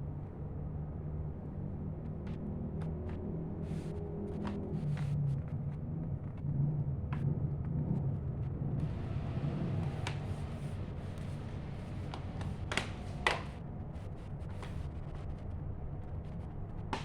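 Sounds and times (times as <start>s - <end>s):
low rumble and hum: 0.0s - 17.0s.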